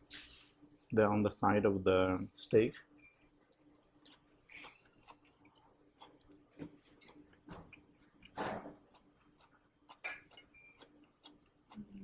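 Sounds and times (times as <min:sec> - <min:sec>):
person chewing food: 0:03.0 - 0:12.0.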